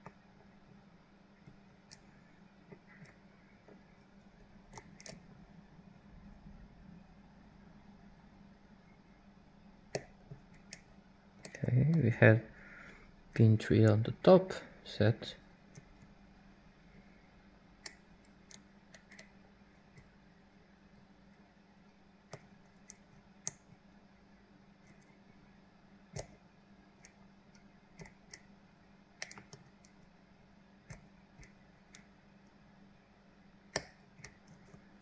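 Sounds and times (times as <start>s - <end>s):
low steady hum: 0.0s - 35.0s
lock pick clicking pins: 4.7s - 5.2s, 29.2s - 30.0s.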